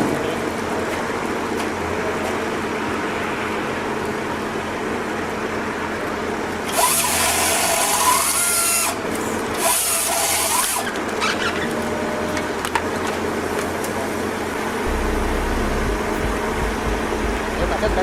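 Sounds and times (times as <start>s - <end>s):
machine running: 14.5s - 18.0s.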